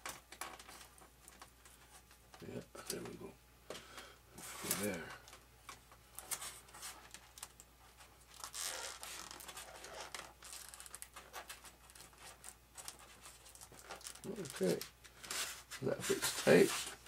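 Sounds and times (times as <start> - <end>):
wires pressed into foam: 4.4 - 17.0.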